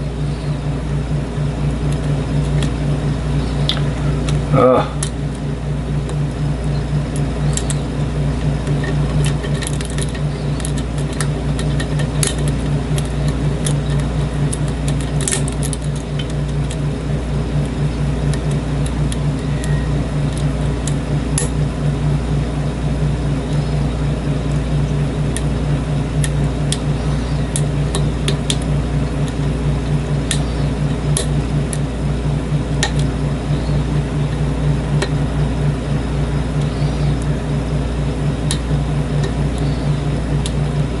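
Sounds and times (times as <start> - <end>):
low mechanical hum: 0.0 - 41.0
lock picks clicking on lock pins: 8.7 - 16.8.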